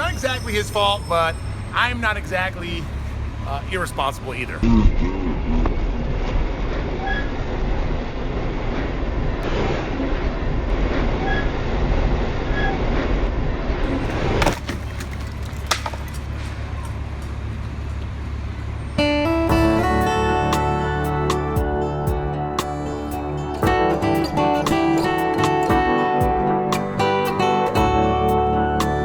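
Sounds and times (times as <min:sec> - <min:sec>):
street ambience: 0:00.0 - 0:29.0
vehicle rumbling: 0:00.0 - 0:29.0
strummed guitar music: 0:19.0 - 0:29.0.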